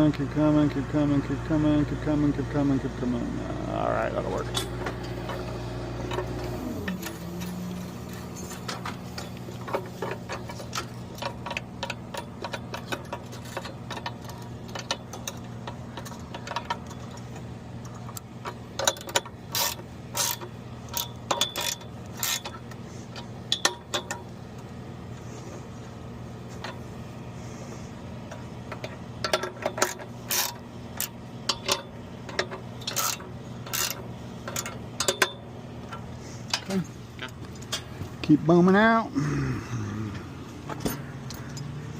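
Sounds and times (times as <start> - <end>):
engine idling: 0.0 - 41.9
sharp clicks and knocks: 4.4 - 24.3, 28.3 - 38.2.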